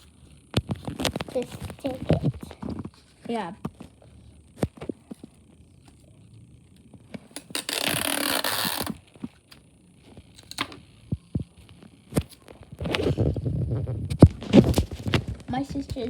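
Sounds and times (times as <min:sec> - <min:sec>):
sticky tape pulled off roll: 0:07.3 - 0:09.6.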